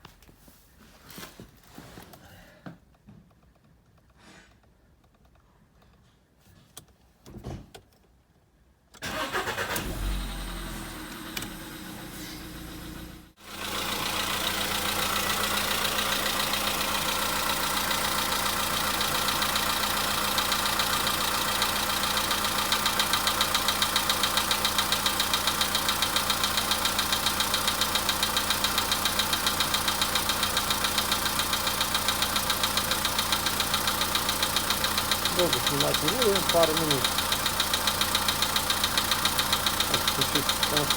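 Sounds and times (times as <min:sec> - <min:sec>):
car engine starting and idling: 0:09.0 - 0:40.9
rhythmic engine knock: 0:29.7 - 0:40.9.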